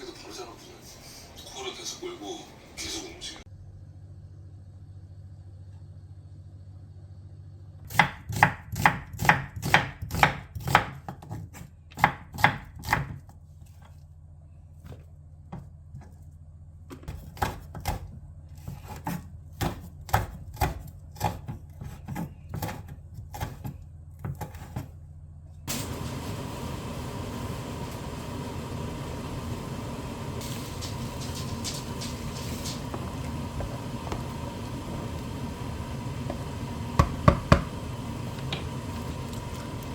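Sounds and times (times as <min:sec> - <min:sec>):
knife chopping on cutting board: 0:07.9 - 0:13.2, 0:17.0 - 0:24.9
steady hiss: 0:25.7 - 0:39.9.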